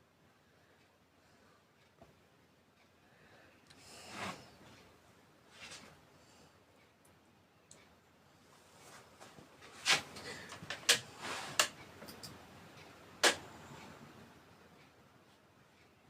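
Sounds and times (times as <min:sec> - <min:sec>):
sharp knocks and clicks: 0:13.2 - 0:13.4.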